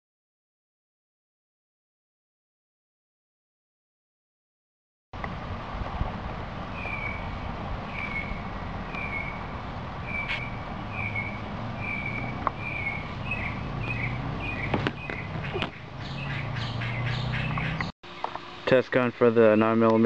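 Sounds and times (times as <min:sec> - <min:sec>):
bird chirping: 0:06.7 - 0:18.5.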